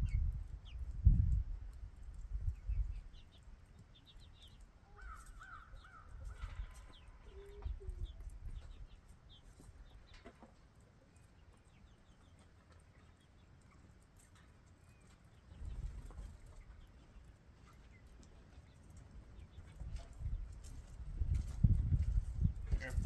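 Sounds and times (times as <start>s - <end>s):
faint high bird chirps: 2.4s - 10.3s
short bird calls: 4.5s - 8.2s.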